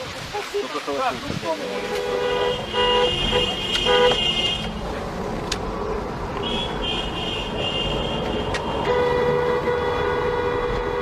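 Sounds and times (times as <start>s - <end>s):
engine and road noise: 0.0s - 11.0s
vehicle horns tooting: 1.7s - 4.7s, 6.4s - 11.0s.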